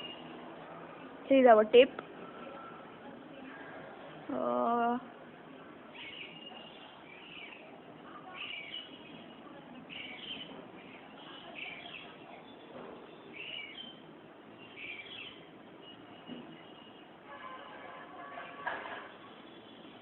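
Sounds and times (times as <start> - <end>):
bird chirping: 0.0 - 0.4, 5.9 - 17.2
faint steady background noise: 0.0 - 20.0.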